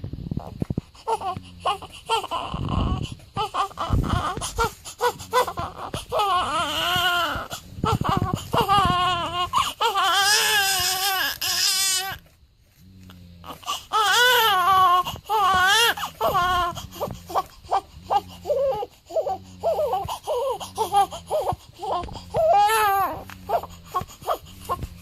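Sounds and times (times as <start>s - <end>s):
baby crying: 1.0s - 12.2s, 13.4s - 25.0s
low thumps: 2.5s - 9.4s.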